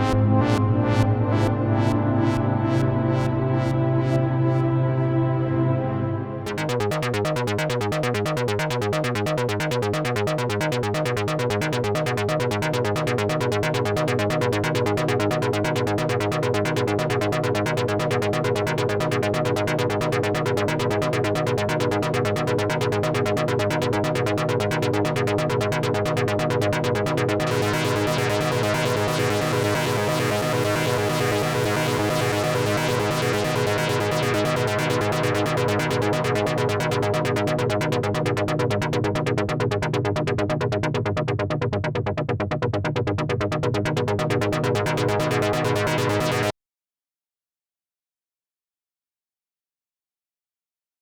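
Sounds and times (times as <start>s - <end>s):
droning synth tones: 0.0s - 6.7s
synth pulse pattern: 0.0s - 11.8s.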